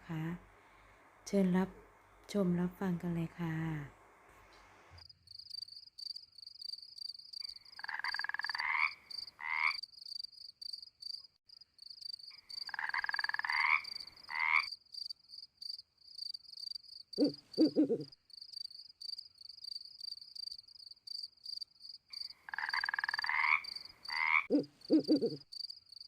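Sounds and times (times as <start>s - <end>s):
crickets chirping: 5.0s - 26.0s
frogs croaking: 5.0s - 26.0s
high rapid chirping: 17.2s - 18.2s.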